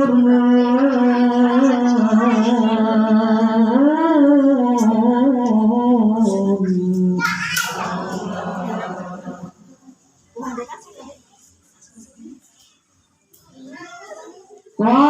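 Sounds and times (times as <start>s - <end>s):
person reciting melodically: 0.0s - 9.8s.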